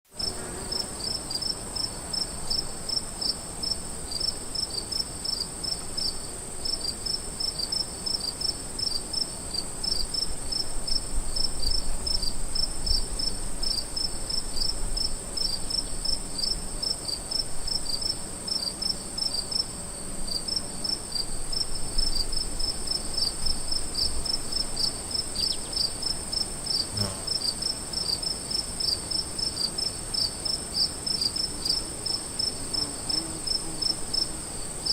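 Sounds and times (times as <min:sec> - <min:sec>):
crickets trilling: 0:07.4 - 0:34.9.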